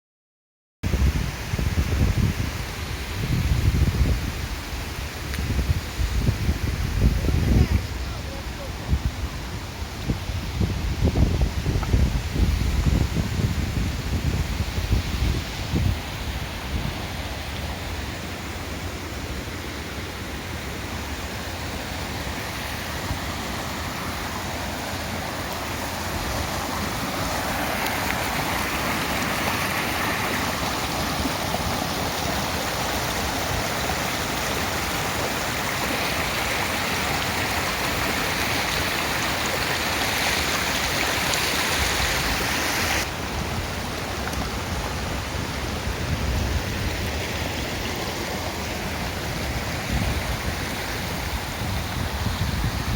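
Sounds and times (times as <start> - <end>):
stream rushing over stones: 0.9 - 52.9.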